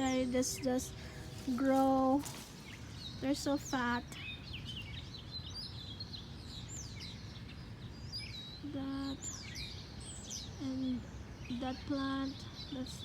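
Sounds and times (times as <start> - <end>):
low outdoor rumble: 0.0 - 9.4
birds chirping and singing: 0.0 - 13.0.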